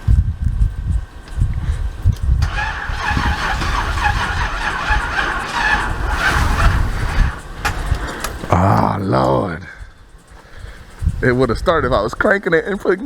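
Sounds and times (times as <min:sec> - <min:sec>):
car engine cranking on starter: 0:02.4 - 0:08.5.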